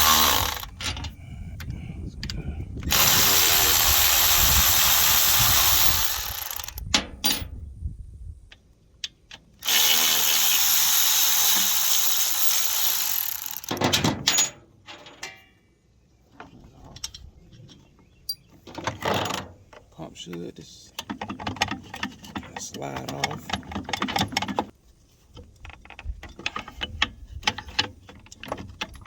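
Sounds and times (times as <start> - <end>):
power tool running: 0.0 - 0.8, 2.9 - 6.8, 9.6 - 13.7.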